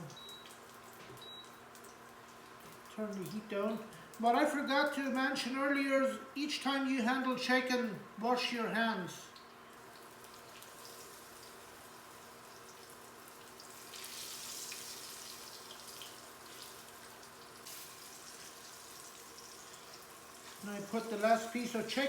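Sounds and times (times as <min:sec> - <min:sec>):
oil sizzling in a frying pan: 0:09.7 - 0:22.0.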